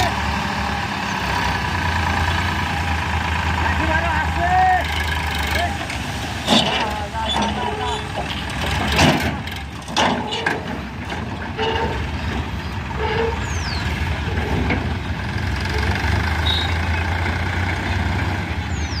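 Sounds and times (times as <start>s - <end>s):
diesel engine running: 0.0s - 19.0s
machinery clunks: 5.8s - 15.0s.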